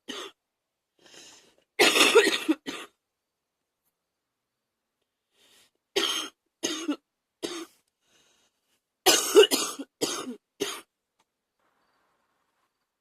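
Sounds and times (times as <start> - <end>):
woman coughing wetly: 1.8 - 2.9, 6.0 - 7.7, 9.1 - 10.9.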